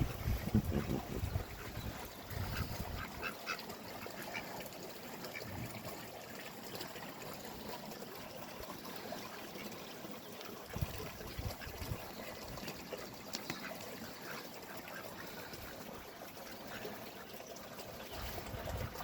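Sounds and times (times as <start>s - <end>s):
ducks quacking: 0.1s - 4.7s, 11.2s - 17.3s.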